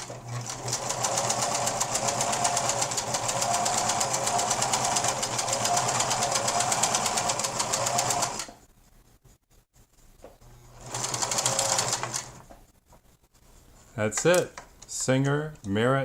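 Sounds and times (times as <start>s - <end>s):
sewing machine running: 0.0s - 8.5s, 10.8s - 12.4s.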